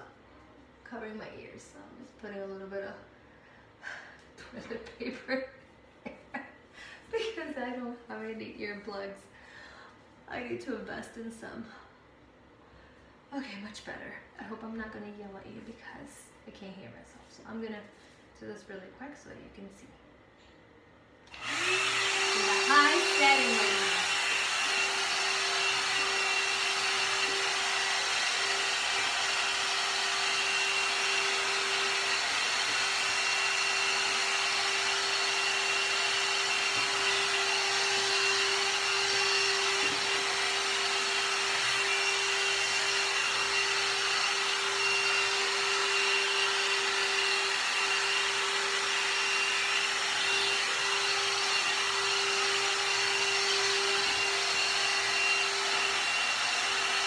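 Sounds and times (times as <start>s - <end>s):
hair dryer brush running: 21.3s - 57.0s.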